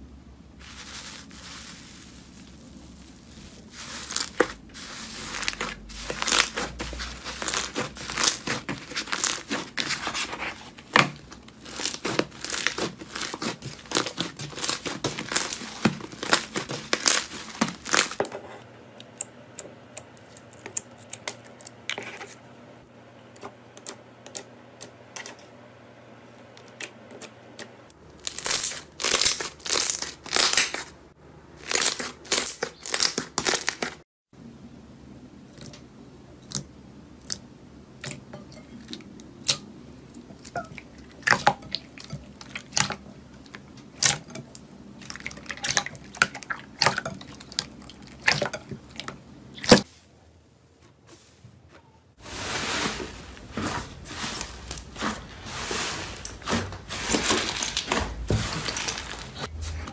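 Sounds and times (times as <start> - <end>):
slime crackling and popping: 2.3 - 10.2, 10.9 - 18.2, 28.2 - 30.9, 31.6 - 34.0.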